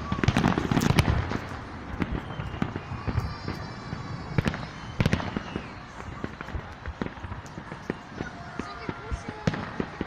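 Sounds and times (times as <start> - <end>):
fireworks bangs: 0.0 - 10.0
fireworks popping and crackling: 0.0 - 10.0.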